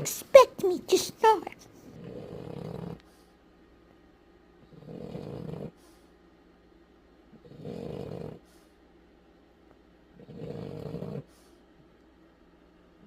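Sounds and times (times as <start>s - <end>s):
dog snoring loudly: 1.8s - 3.0s, 4.6s - 5.8s, 7.3s - 8.5s, 10.1s - 11.3s.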